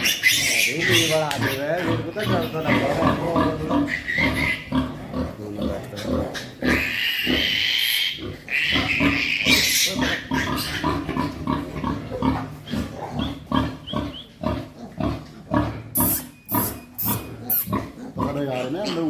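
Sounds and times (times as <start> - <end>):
piglets squealing: 0.0 - 19.0
piglet grunts: 14.8 - 19.0.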